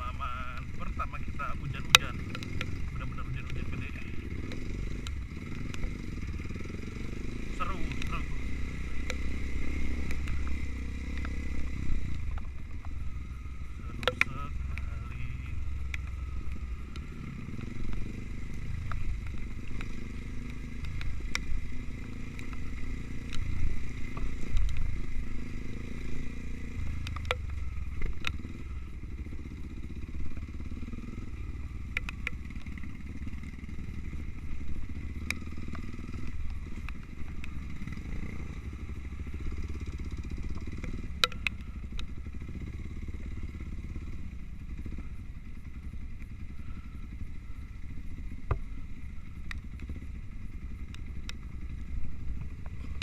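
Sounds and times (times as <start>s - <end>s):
motorcycle engine running: 0.0s - 53.0s
sharp clicks and knocks: 13.9s - 14.9s, 27.0s - 28.4s, 31.9s - 32.8s, 40.2s - 42.2s.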